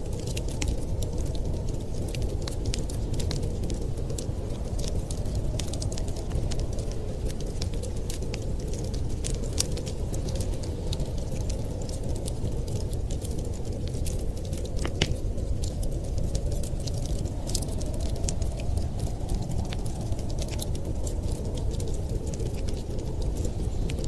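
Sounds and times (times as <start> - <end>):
wood fire crackling: 0.0 - 24.0
sharp pops and snaps: 2.0 - 15.8.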